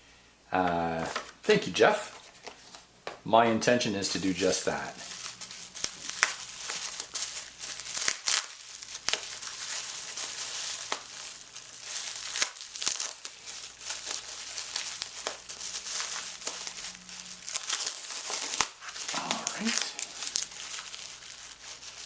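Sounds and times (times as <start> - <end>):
packing material crinkling: 4.1 - 22.0
small clicks and crackles: 5.0 - 22.0.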